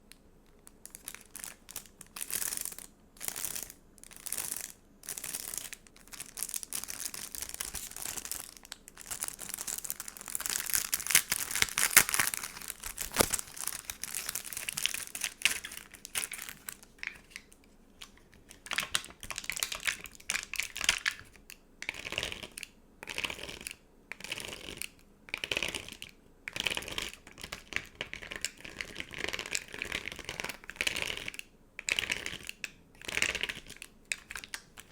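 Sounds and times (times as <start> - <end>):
stickers crinkling and rustling: 0.5 - 21.3.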